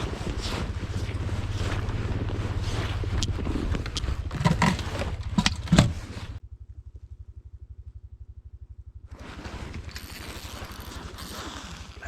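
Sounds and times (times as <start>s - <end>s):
motor idling with low pulse: 0.0s - 12.0s
sharp knocks and clatter: 3.2s - 6.4s.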